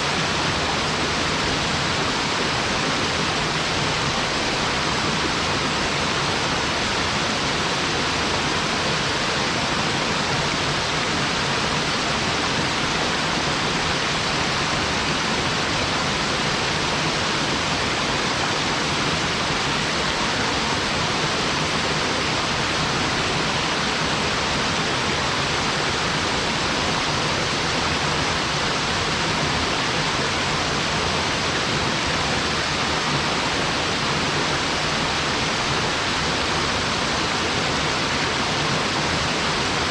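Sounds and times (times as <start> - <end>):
waterfall rushing into pool: 0.0 - 39.9.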